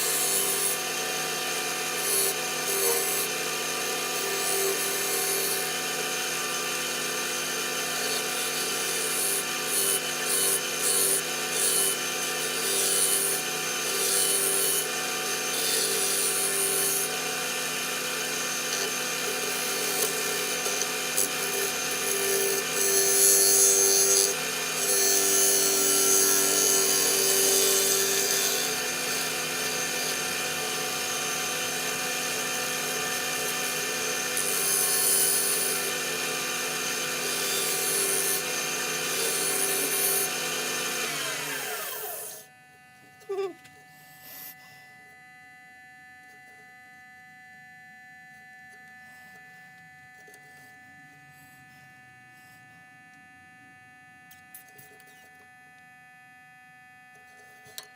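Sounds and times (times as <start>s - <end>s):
wood lathe humming: 0.0s - 42.5s.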